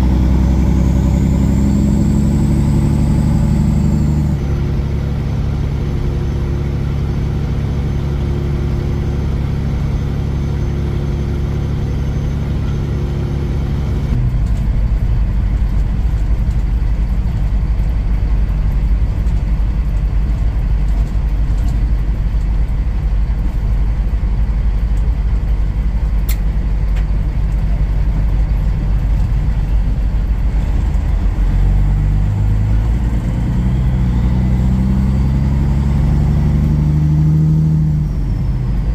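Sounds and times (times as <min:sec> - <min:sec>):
road noise: 0:00.0 - 0:38.9
truck diesel engine: 0:00.0 - 0:38.9
brief click: 0:26.2 - 0:26.4.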